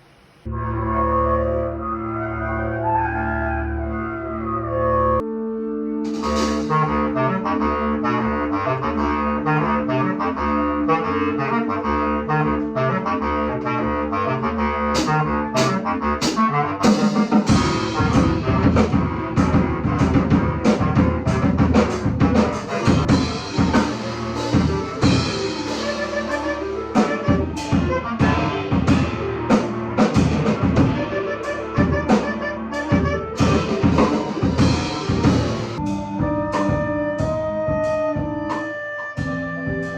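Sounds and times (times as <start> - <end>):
bass clarinets playing metal riff: 0.5 - 39.9
drum kit with cymbal crashes: 6.1 - 6.8, 15.0 - 39.9.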